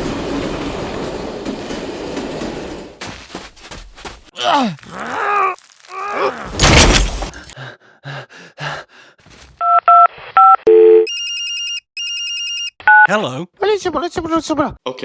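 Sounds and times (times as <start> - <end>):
crash with breaking: 5.0 - 7.6
telephone keypad beeps: 9.6 - 13.1.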